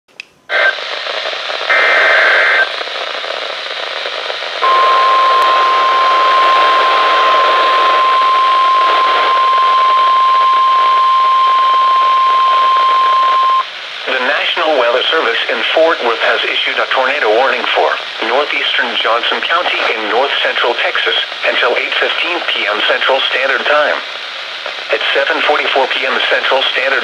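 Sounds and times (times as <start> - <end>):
radio static hiss: 0.5 - 27.0
buzzing data burst: 4.6 - 13.7
steady warning alarm tone: 4.6 - 13.7.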